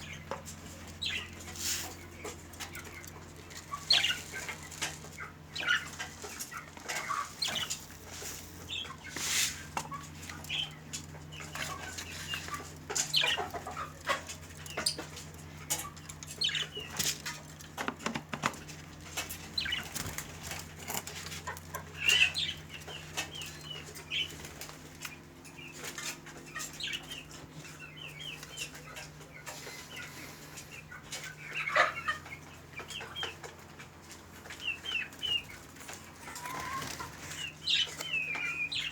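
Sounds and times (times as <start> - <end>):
birds calling and chirping: 0.0 - 38.9
wings flapping: 19.6 - 20.6.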